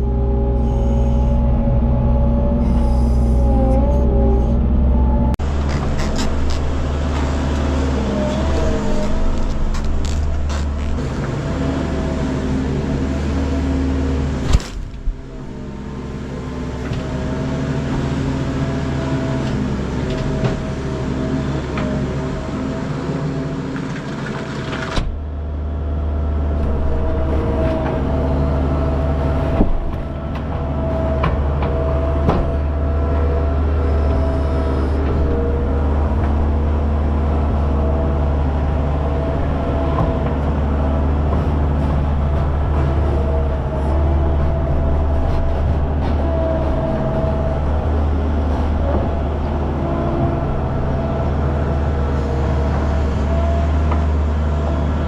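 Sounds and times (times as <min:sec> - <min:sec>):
farm machine engine running: 0:00.0 - 0:55.0
sharp knocks and clunks: 0:29.5 - 0:33.2.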